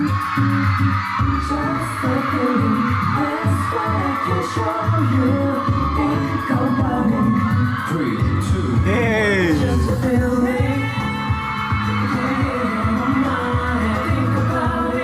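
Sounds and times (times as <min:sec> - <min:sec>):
man singing: 0:08.8 - 0:10.6.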